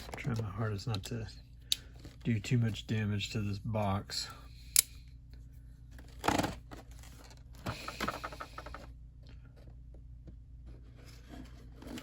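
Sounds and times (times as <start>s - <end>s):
cardboard scraping and rubbing: 10.7s - 12.0s.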